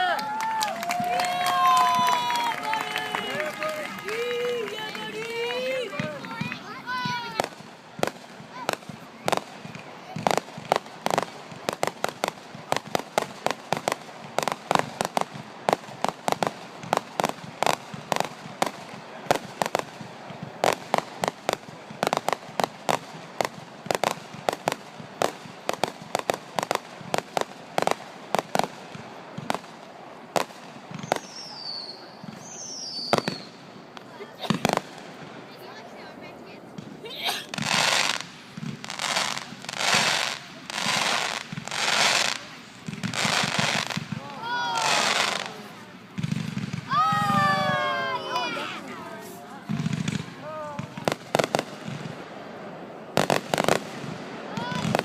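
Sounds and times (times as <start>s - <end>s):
fireworks bangs and crackles: 0.0s - 55.0s
falling firework whistles: 30.9s - 33.6s.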